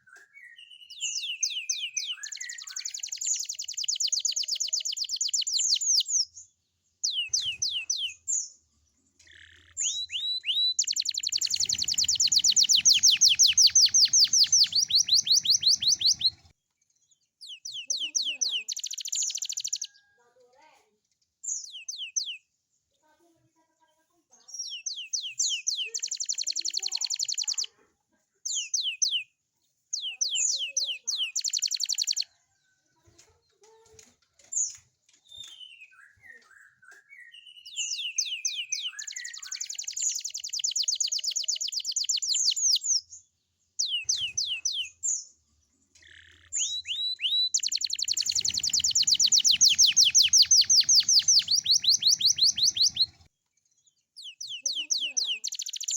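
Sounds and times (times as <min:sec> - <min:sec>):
canary singing trills: 0:00.8 - 0:06.3, 0:07.0 - 0:08.3, 0:09.2 - 0:16.5, 0:17.5 - 0:20.0, 0:24.6 - 0:27.7, 0:30.0 - 0:32.8, 0:37.5 - 0:43.1, 0:43.8 - 0:45.0, 0:45.9 - 0:53.3, 0:54.2 - 0:55.9.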